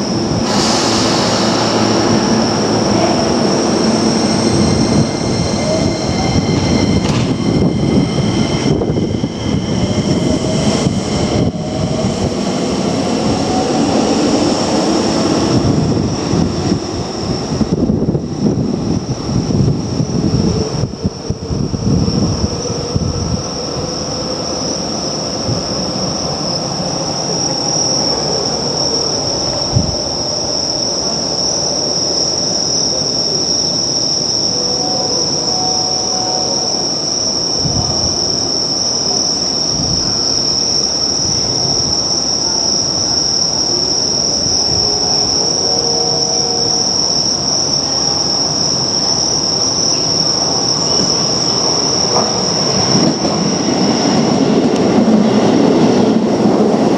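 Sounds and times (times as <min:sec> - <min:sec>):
electric train rumbling: 0:00.0 - 0:56.9
high-pitched tone: 0:34.1 - 0:38.4, 0:43.7 - 0:49.1.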